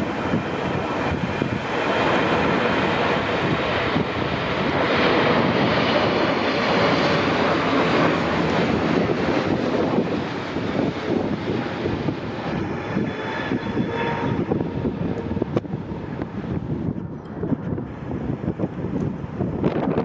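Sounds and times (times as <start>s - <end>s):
jet engines passing: 0.0s - 20.0s.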